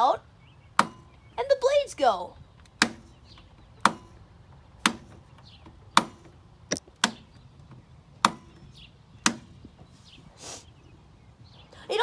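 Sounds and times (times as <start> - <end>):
sharp mechanical clicks of a knob: 2.6 - 9.6.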